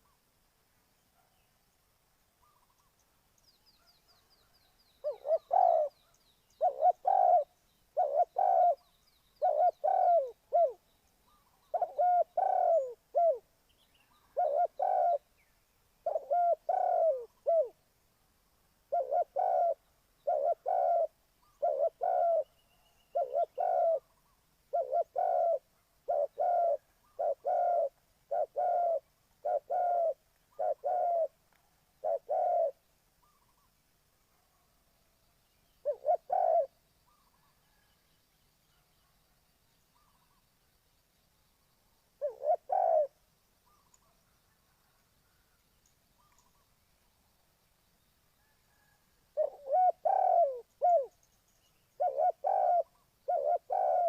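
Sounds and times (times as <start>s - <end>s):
dove cooing: 5.0s - 6.0s, 6.6s - 10.8s, 11.7s - 13.5s, 14.3s - 15.3s, 16.0s - 17.8s, 18.9s - 22.5s, 23.1s - 24.1s, 24.7s - 31.4s, 32.0s - 33.4s, 35.8s - 37.9s, 42.2s - 43.9s, 48.7s - 51.2s, 52.0s - 54.0s.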